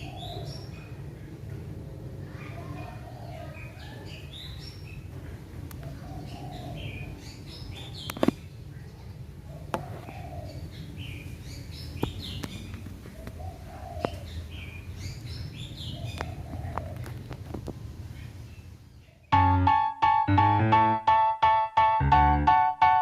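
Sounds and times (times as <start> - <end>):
high chirps: 19.3 - 22.7.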